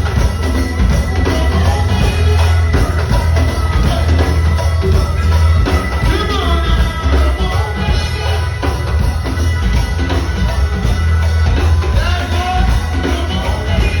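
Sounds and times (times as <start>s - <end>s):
drum and percussion groove: 0.0s - 14.0s
heavy bass: 0.0s - 14.0s
person singing: 1.0s - 9.4s, 11.6s - 14.0s.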